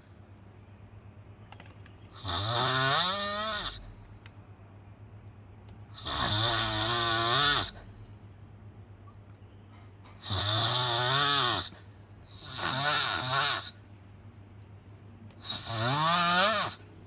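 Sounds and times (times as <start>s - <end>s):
low steady hum: 0.0s - 2.4s, 3.3s - 10.2s, 11.7s - 12.5s, 13.7s - 15.4s, 16.8s - 17.0s
heavy snoring: 2.2s - 3.9s, 5.9s - 7.9s, 10.2s - 13.8s, 15.4s - 16.8s.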